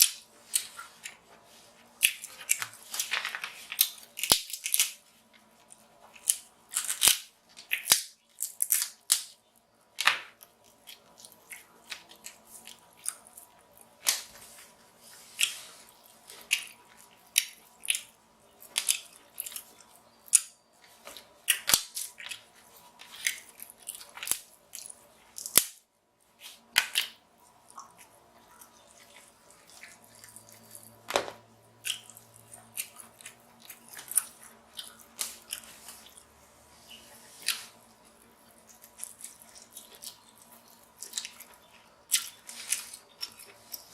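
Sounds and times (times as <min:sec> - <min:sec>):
crab shells cracking: 0:03.8 - 0:05.0, 0:06.2 - 0:09.4, 0:23.1 - 0:25.8
chewing and lip smacking: 0:31.8 - 0:36.3, 0:37.4 - 0:43.9.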